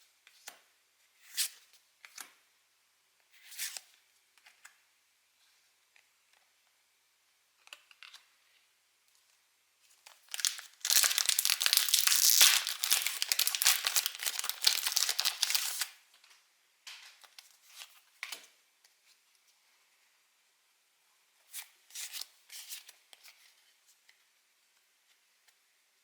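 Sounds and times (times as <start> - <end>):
foil wrapper tearing and crinkling: 10.2 - 16.0.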